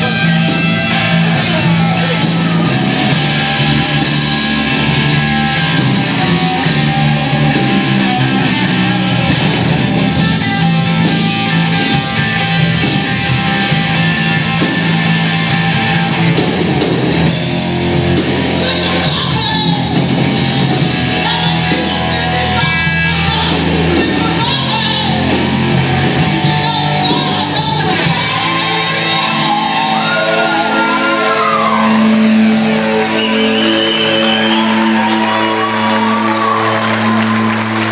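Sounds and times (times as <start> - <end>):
bass guitar: 0.0 - 37.9
drums: 0.0 - 37.9
electric guitar: 0.0 - 37.9
person singing and shouting: 18.5 - 32.0.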